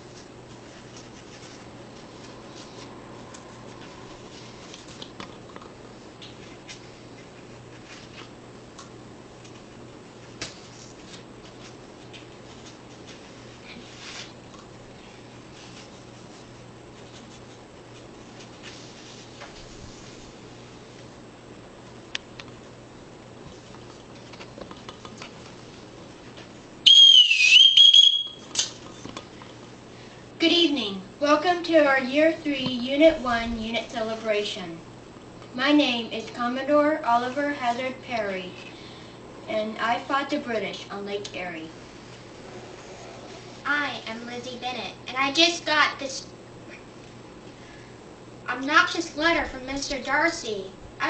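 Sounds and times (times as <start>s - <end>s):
low hum and hiss: 0.0s - 51.0s
loud shrill whistle: 26.8s - 28.5s.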